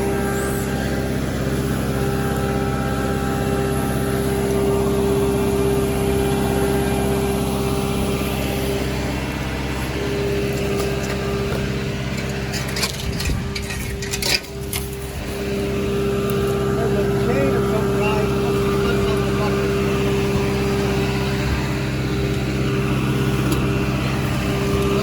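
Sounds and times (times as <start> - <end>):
excavator engine running: 0.0 - 25.0
metallic clanks: 10.6 - 15.0.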